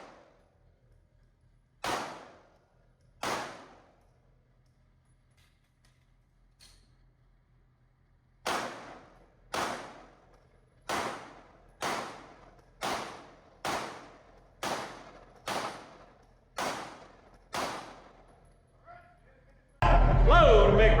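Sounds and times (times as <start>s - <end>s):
pistol shots echoing: 1.8s - 2.6s, 3.2s - 4.0s, 8.4s - 10.2s, 10.9s - 18.3s.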